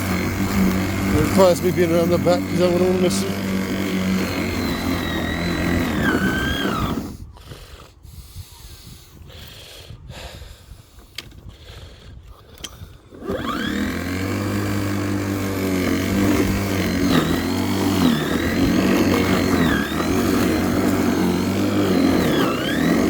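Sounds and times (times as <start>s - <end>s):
lawnmower motor whine: 0.0s - 7.3s, 12.5s - 23.0s.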